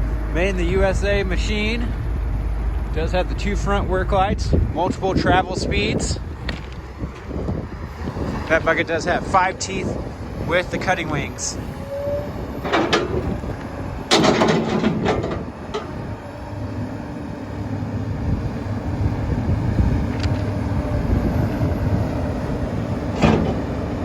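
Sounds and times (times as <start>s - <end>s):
excavator diesel engine running: 0.0s - 24.0s
short clatters: 12.6s - 16.0s.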